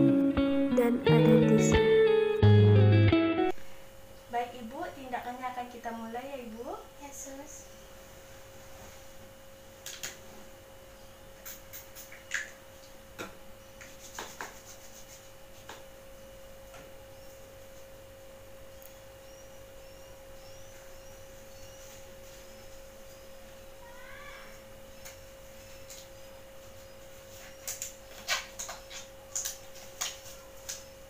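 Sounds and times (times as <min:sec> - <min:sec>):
faint high chirps: 0:18.7 - 0:25.1.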